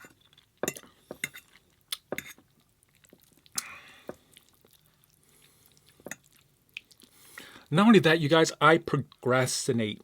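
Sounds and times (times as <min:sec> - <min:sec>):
wet chewing: 0:00.0 - 0:07.2.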